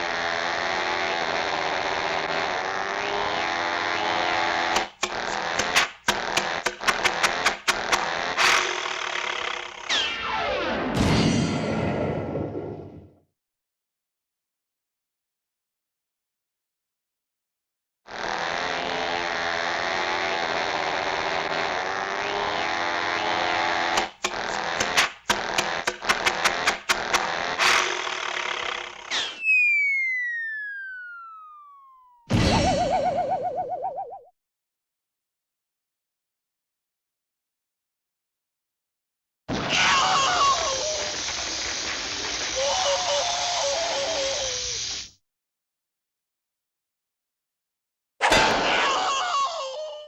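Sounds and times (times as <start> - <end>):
dense cartoon buzzing: 0.0 - 10.0, 18.1 - 29.4, 39.5 - 45.1
rapid sharp clicks: 4.7 - 9.8, 24.0 - 29.1.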